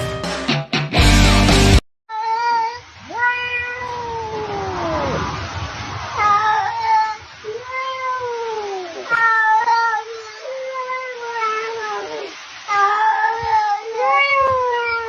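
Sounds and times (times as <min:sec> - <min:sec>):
cat yowling: 0:02.1 - 0:05.1, 0:06.2 - 0:15.0.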